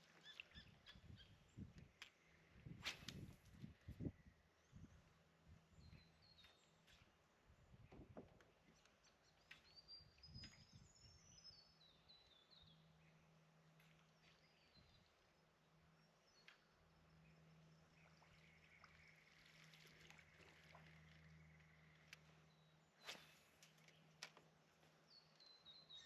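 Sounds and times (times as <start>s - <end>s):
small bird singing: 0.0s - 1.7s, 5.7s - 7.1s, 8.8s - 19.7s, 25.1s - 26.0s.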